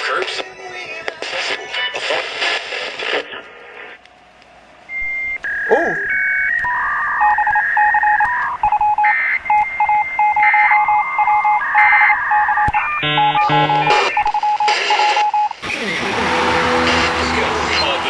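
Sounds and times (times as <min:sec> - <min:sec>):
rapid electronic alert beeps: 0:04.9 - 0:15.6.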